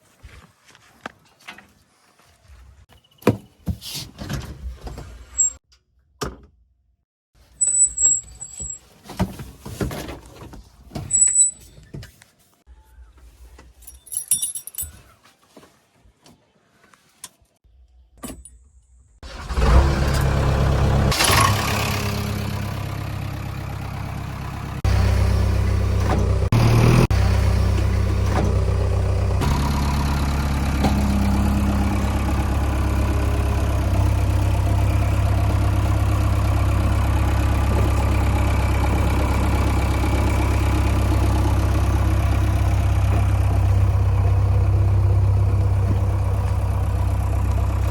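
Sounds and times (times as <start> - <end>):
heavy diesel engine running: 19.2 - 47.9.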